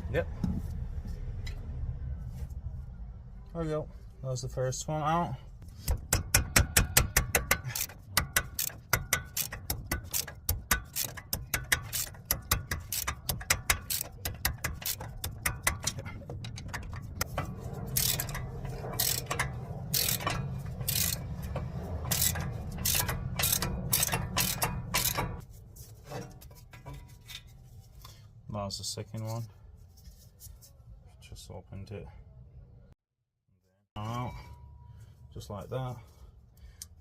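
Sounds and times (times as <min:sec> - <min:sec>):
socket ratchet clicking: 0:06.2 - 0:17.2, 0:19.0 - 0:21.5, 0:22.1 - 0:25.4
low hum: 0:15.1 - 0:25.4.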